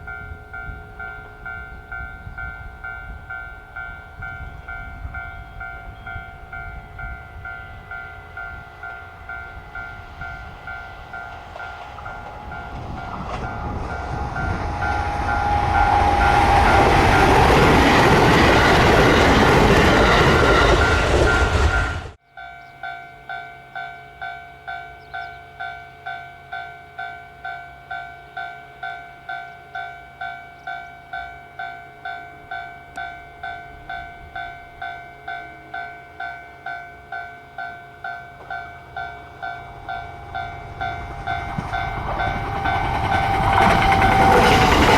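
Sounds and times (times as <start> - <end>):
train passing: 0.0 - 22.2, 32.4 - 44.9.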